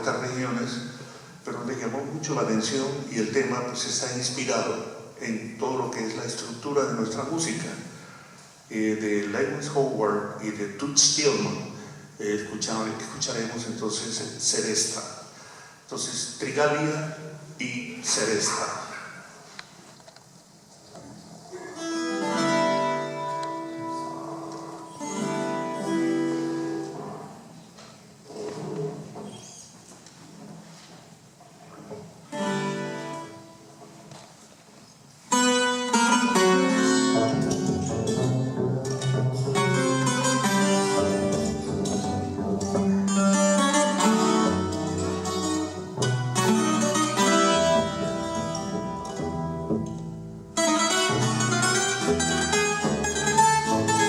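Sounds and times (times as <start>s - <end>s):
double bass: 35.4s - 54.0s
strummed ringing chords: 35.4s - 54.0s.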